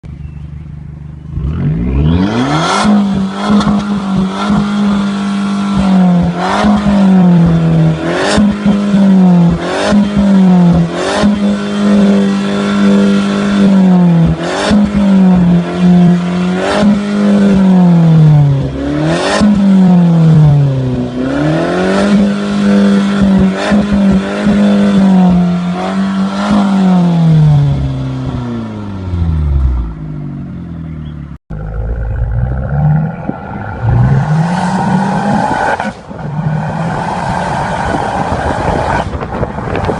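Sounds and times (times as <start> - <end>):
car engine revving: 1.2 - 39.9
exhaust cracks: 31.5 - 39.9.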